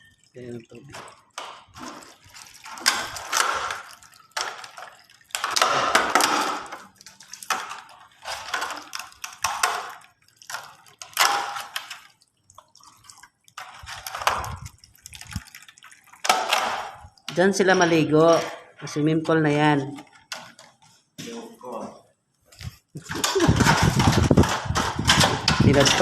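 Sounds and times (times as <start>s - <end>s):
water gushing from pipe: 0.0s - 17.3s, 22.6s - 26.0s.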